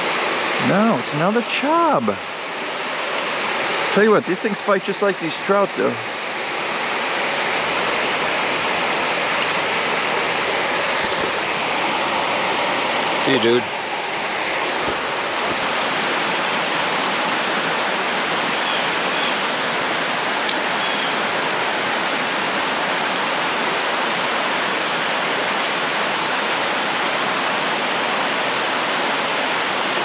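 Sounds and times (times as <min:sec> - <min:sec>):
creek water rushing: 0:00.0 - 0:30.0.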